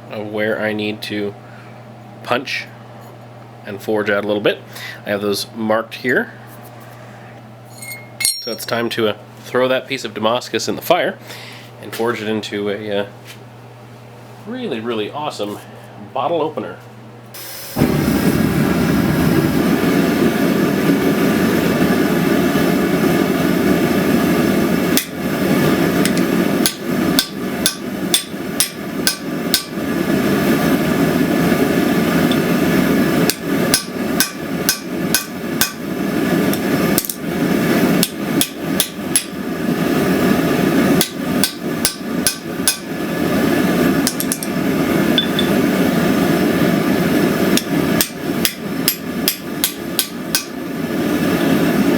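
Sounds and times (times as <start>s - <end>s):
hammer striking hot steel: 7.8s - 8.8s, 25.0s - 25.2s, 26.0s - 29.8s, 33.2s - 35.9s, 36.5s - 37.2s, 38.0s - 39.4s, 41.0s - 43.0s, 44.0s - 44.6s, 45.2s - 45.6s, 47.5s - 50.6s
forge roaring: 17.8s - 26.6s.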